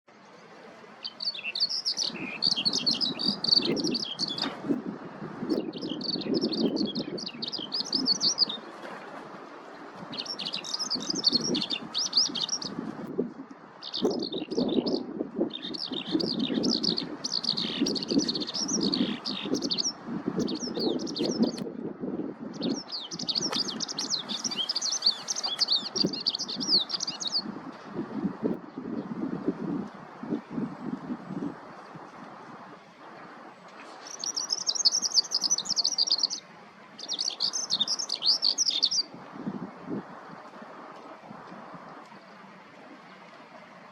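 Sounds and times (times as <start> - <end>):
skylark singing: 1.0 - 4.5, 5.5 - 8.6, 10.1 - 12.8, 13.8 - 21.6, 22.6 - 27.5, 34.1 - 36.4, 37.0 - 39.1.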